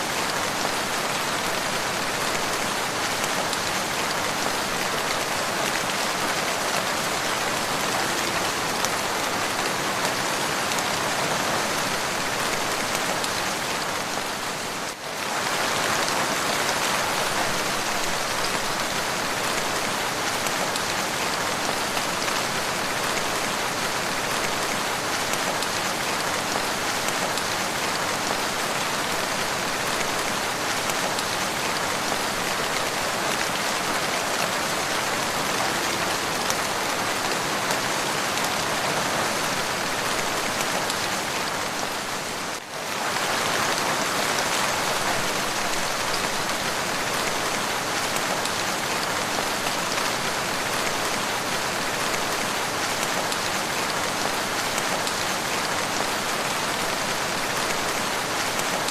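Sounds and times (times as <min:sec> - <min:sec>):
steady rain pattering: 0:00.0 - 0:58.9.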